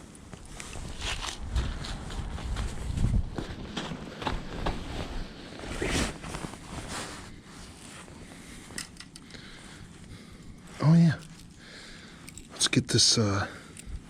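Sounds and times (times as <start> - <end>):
rustling and scuffing: 0.2 - 9.0.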